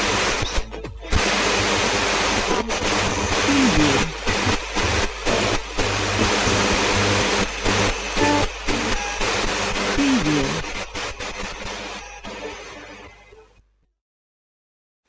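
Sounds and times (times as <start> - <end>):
radio static hiss: 0.0 - 13.2
radio crackles: 1.2 - 13.0.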